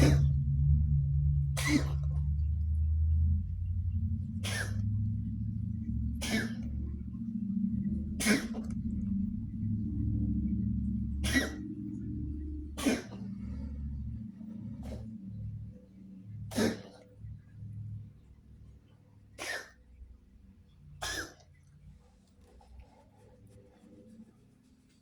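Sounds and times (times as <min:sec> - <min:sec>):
cat coughing: 0:00.0 - 0:00.3, 0:01.6 - 0:02.0, 0:04.4 - 0:04.8, 0:06.2 - 0:06.8, 0:08.2 - 0:08.6, 0:11.2 - 0:11.7, 0:12.8 - 0:13.3, 0:16.5 - 0:17.0, 0:19.4 - 0:19.8, 0:21.0 - 0:21.5
steady low hum: 0:00.0 - 0:25.0.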